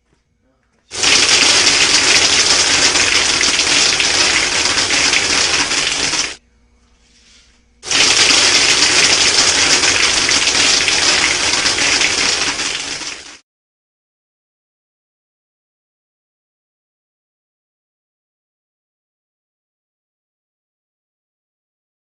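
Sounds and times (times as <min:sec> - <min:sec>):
airsoft pellets rattling: 0:00.9 - 0:06.4, 0:07.8 - 0:13.4.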